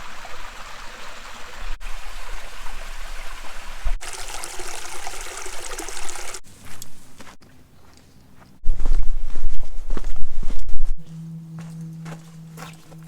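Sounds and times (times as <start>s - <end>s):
small waterfall trickling: 0.0s - 6.4s.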